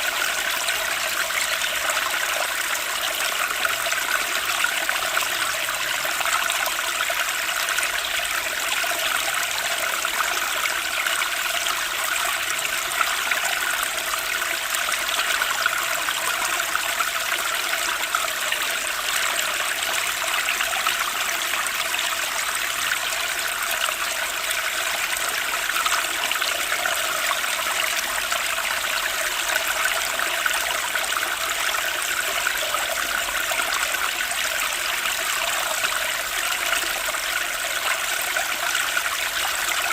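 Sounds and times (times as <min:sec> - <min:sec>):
stream trickling and splashing: 0:00.0 - 0:39.9.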